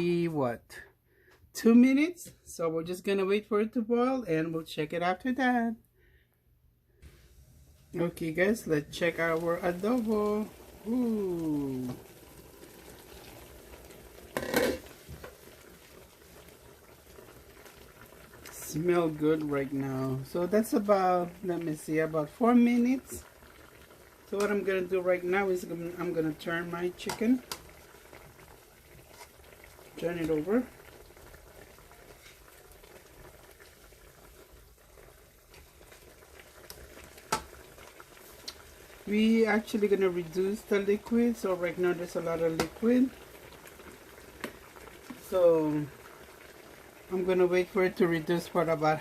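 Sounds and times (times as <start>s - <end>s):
pot bubbling at a boil: 6.9s - 49.0s
pot clattering: 14.3s - 15.0s.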